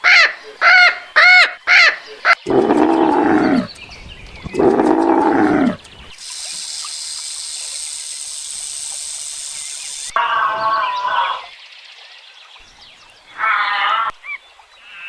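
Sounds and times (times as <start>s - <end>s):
high-pitched hiss: 6.1s - 10.2s.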